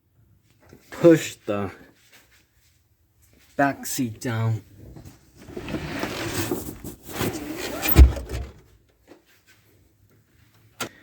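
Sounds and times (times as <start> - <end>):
seatback rustling and scraping: 5.4 - 8.7.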